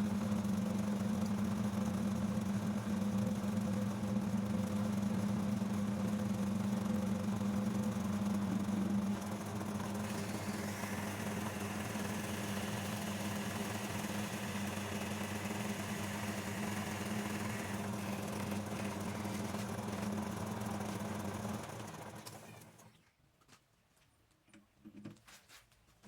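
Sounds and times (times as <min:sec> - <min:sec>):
metal lathe motor humming: 0:09.2 - 0:22.8.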